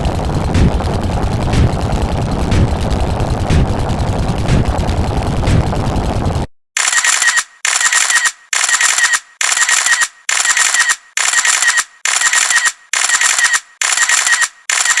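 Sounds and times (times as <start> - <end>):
camera shutter clicks: 6.8 - 15.0.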